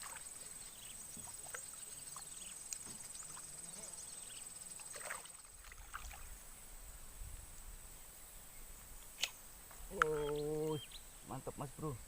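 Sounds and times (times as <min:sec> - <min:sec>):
small ticks: 0:02.4 - 0:03.4
sharp click: 0:09.2 - 0:09.4.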